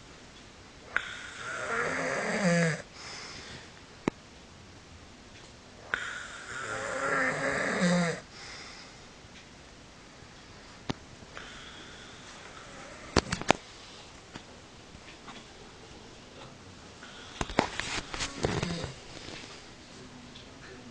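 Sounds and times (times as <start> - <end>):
person snoring: 0.9 - 3.5, 5.9 - 8.7, 18.3 - 19.0.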